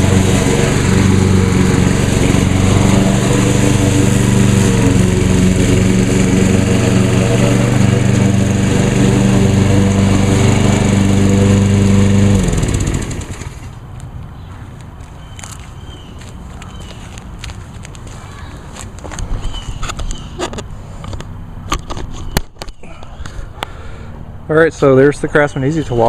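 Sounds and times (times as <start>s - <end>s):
lawn mower engine running: 0.0s - 13.9s.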